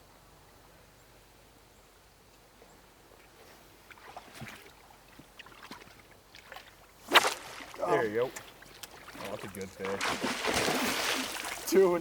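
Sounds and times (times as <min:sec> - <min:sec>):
creek water sloshing: 0:03.2 - 0:12.0.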